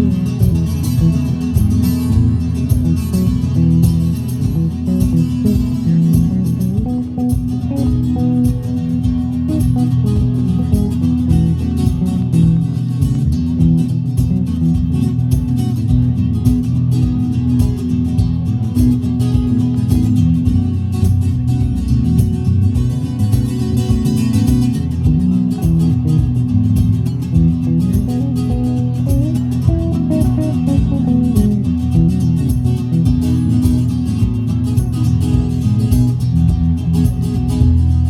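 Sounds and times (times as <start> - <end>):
band music with guitars and bass: 0.0 - 38.0.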